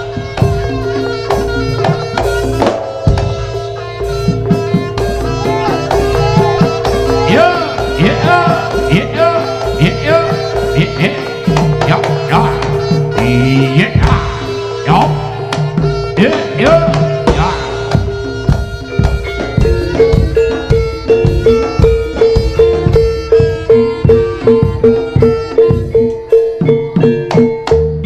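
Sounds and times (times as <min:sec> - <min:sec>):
hand drums playing: 0:00.0 - 0:28.0
held tone: 0:01.1 - 0:27.7.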